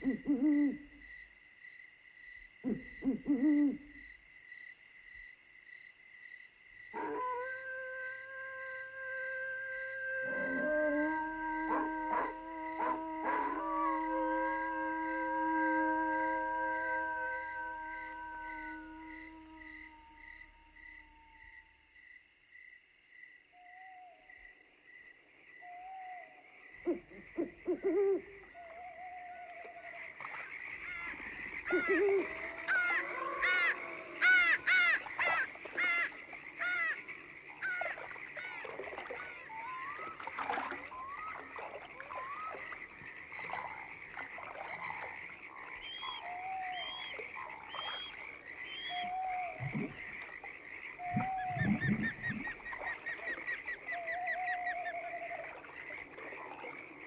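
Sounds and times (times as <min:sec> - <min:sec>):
frogs croaking: 0:00.0 - 0:57.0
insects trilling: 0:00.0 - 0:57.0.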